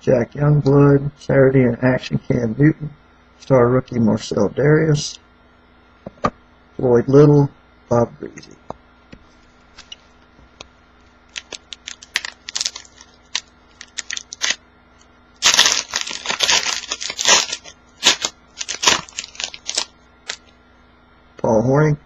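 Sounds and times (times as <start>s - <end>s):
cards clicking and snapping: 11.3s - 14.6s, 15.4s - 20.5s
wrapper crinkling and tearing: 11.3s - 14.6s, 15.4s - 20.5s.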